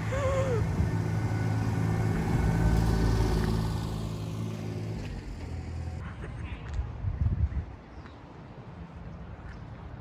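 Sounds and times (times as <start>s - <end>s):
vehicle engine humming: 0.0s - 6.3s.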